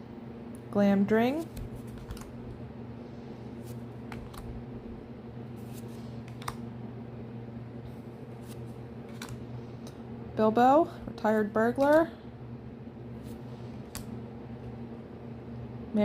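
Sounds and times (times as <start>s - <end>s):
low room hum: 0.0s - 16.0s
trading cards clicking and sliding: 1.3s - 2.6s, 3.6s - 4.6s, 5.6s - 6.7s, 8.3s - 10.0s, 13.2s - 14.2s.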